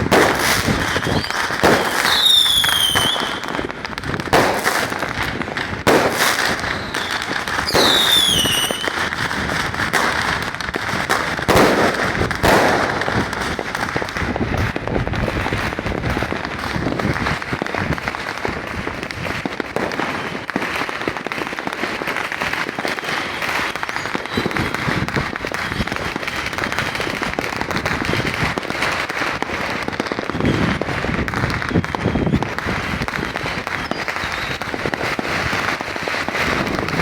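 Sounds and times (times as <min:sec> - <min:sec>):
fireworks and firecrackers banging: 0:00.0 - 0:37.0.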